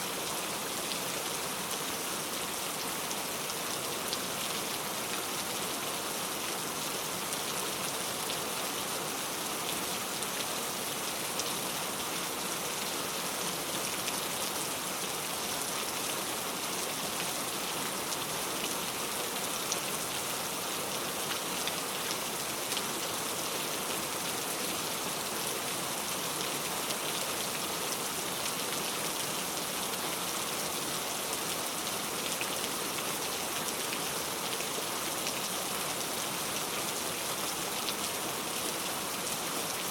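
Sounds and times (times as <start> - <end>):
heavy rain on hard surface: 0.0 - 39.9.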